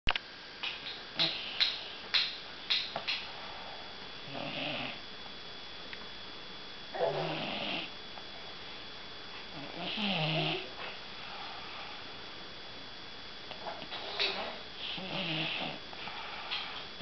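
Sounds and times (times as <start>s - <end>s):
rasping snores: 4.3s - 5.0s, 7.0s - 7.9s, 9.6s - 10.7s, 14.8s - 16.4s.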